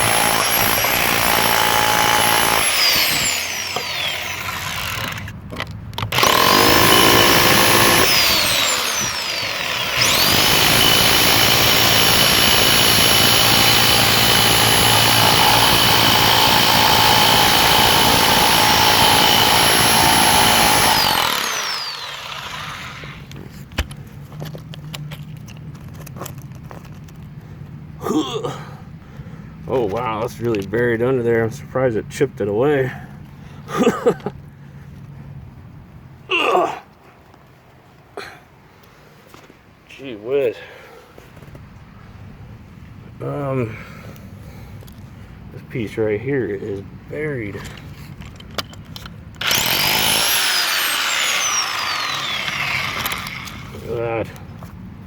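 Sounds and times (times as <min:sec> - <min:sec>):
rotary hammer chipping concrete: 0:00.0 - 0:05.3, 0:06.1 - 0:23.2, 0:49.4 - 0:53.8
motor whine spinning down: 0:49.4 - 0:53.7.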